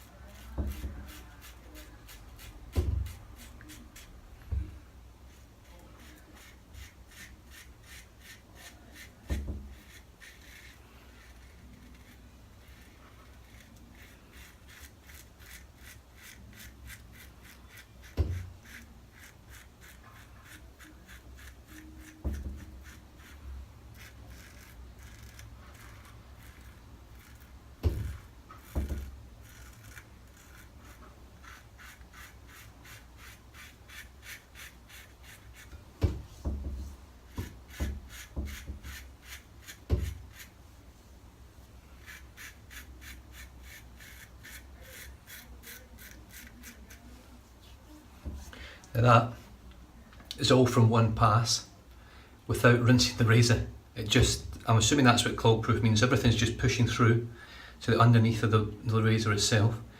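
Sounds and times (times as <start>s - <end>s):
razor scraping stubble: 0.0s - 4.3s, 5.3s - 35.9s, 37.3s - 40.6s, 42.0s - 47.2s.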